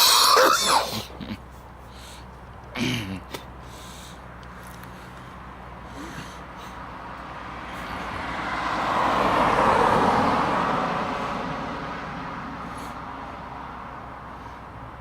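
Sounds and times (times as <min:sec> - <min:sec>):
car passing by: 0:06.6 - 0:15.0.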